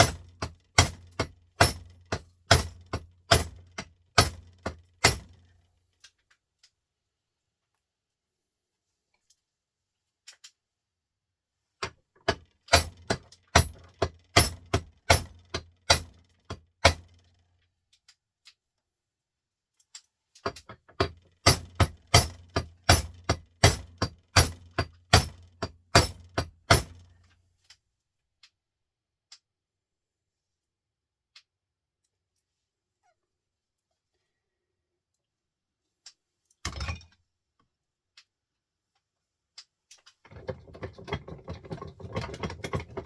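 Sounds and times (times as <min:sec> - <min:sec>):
hammer striking metal casing: 0:00.0 - 0:03.6, 0:21.4 - 0:27.0.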